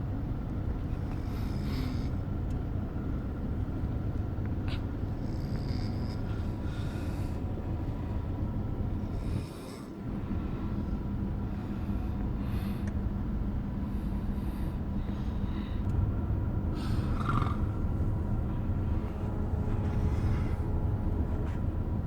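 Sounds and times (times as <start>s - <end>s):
snoring: 5.2s - 6.3s, 16.9s - 17.7s.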